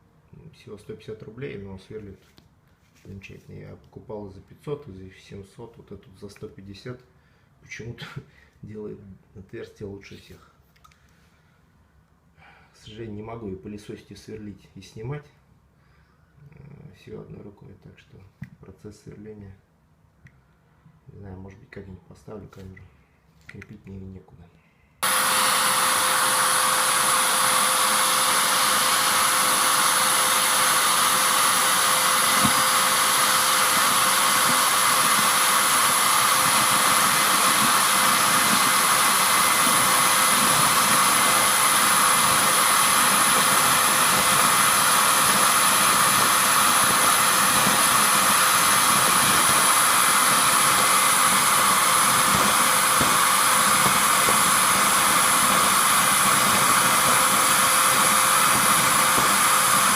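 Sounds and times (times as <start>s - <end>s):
vacuum cleaner humming: 25.0s - 59.9s.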